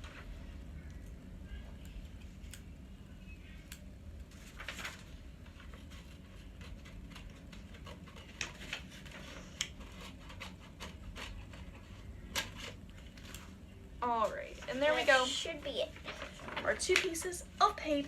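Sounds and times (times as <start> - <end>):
paper rustling: 4.3 - 13.6, 14.6 - 18.0.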